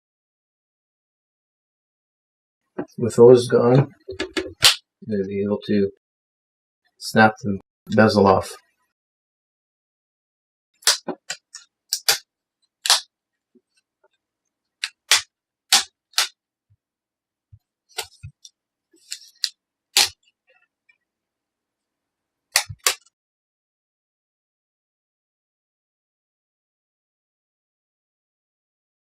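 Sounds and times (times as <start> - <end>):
plastic clips snapping: 10.8 - 12.2, 12.8 - 13.0, 14.8 - 16.3, 19.1 - 20.2, 22.5 - 23.1.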